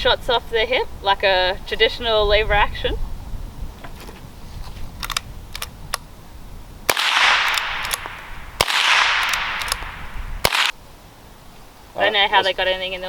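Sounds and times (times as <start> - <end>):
rifle lever clicks: 5.0 - 6.0, 7.1 - 10.6
rifle shots with echo: 6.9 - 10.7.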